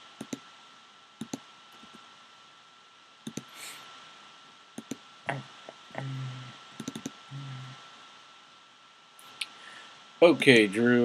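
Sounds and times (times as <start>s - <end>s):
low hiss: 0.0s - 11.0s
computer mouse clicks: 0.2s - 0.4s, 1.2s - 2.0s, 3.2s - 3.6s, 4.8s - 5.0s, 6.8s - 7.2s.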